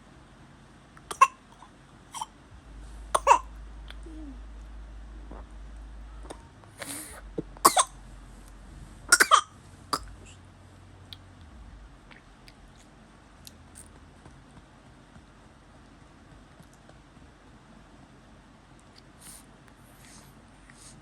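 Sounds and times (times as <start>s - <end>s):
baby coughing: 1.1s - 1.4s, 2.1s - 2.3s, 3.1s - 3.5s, 7.6s - 8.0s, 9.1s - 10.2s.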